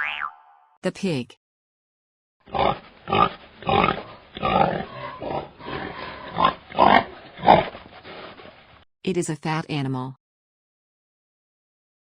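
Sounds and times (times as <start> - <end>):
pig grunting: 2.5 - 7.8.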